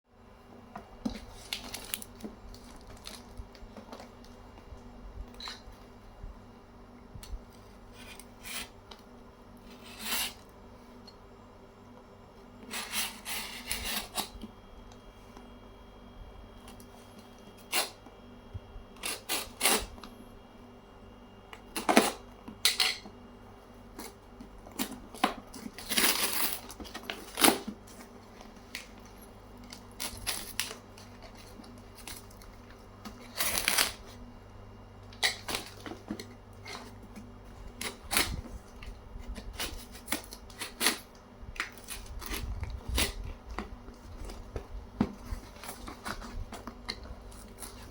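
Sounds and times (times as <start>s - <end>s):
packaging rustling: 1.0s - 4.4s, 24.0s - 34.3s, 35.1s - 47.9s.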